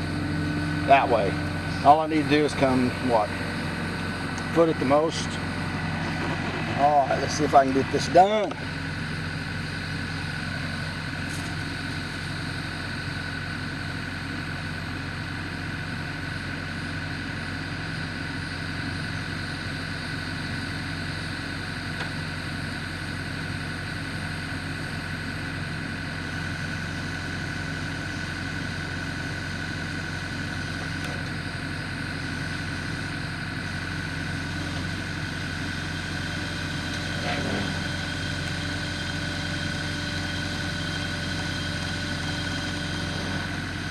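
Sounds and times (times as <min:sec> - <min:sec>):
backhoe engine idling: 0:00.0 - 0:43.9.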